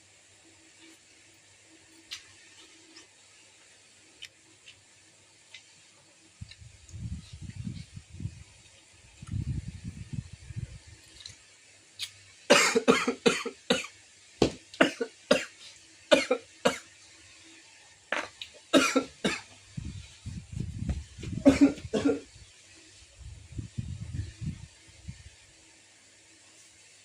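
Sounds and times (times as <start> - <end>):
person coughing: 12.5 - 13.9, 18.2 - 19.5, 21.4 - 22.3.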